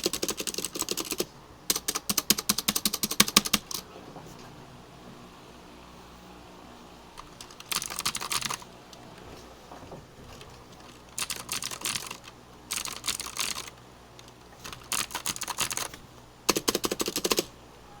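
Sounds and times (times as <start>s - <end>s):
keyboard typing clicks: 0.0s - 3.8s, 7.2s - 9.1s, 10.3s - 17.5s.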